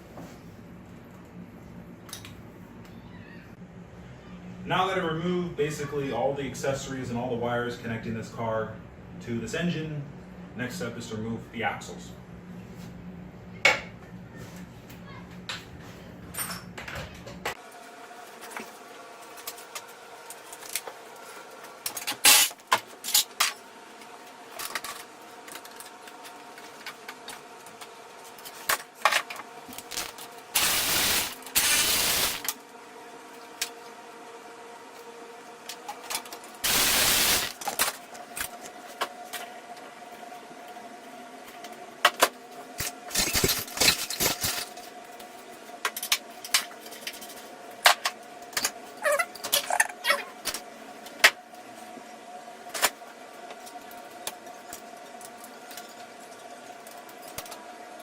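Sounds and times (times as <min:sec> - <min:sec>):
steady hum: 0:18.8 - 0:35.8, 0:36.4 - 0:49.6
pneumatic impact wrench bursts: 0:22.2 - 0:22.6, 0:29.9 - 0:32.5, 0:36.6 - 0:37.6.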